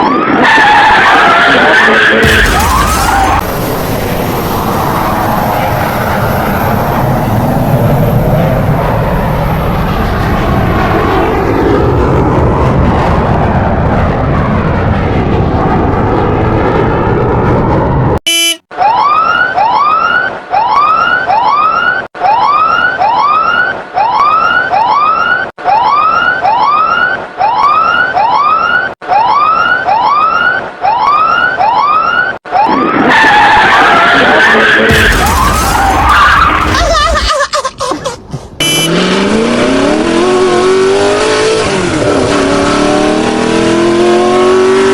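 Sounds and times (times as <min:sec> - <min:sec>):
siren wailing: 0:00.0 - 0:37.2, 0:38.6 - 0:44.9
loud dense roar: 0:00.2 - 0:18.2, 0:32.5 - 0:37.0, 0:38.6 - 0:44.9.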